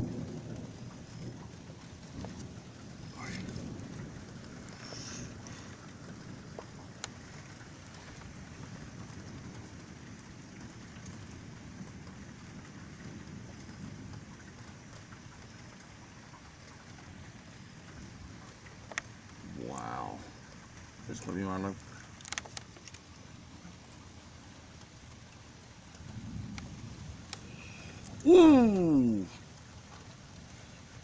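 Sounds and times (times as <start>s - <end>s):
steady rain falling: 0.0s - 31.0s
sharp drip ticks: 9.2s - 19.4s, 20.3s - 26.7s, 27.3s - 28.2s.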